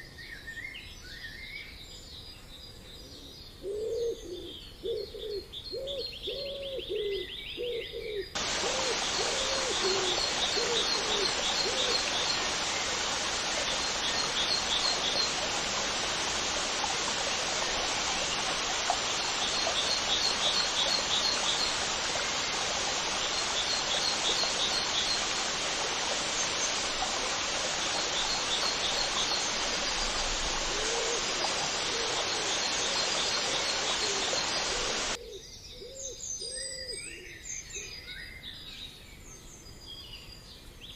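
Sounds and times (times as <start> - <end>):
bird cooing: 3.6 - 12.3, 30.6 - 32.4
steady rushing hiss: 8.4 - 35.2.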